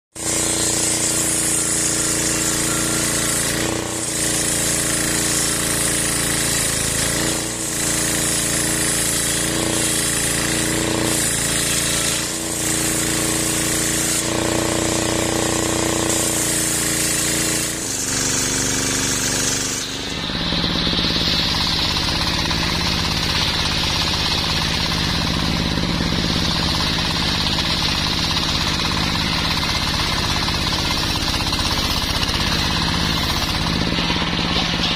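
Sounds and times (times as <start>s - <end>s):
circular saw cutting wood: 0.1s - 34.9s.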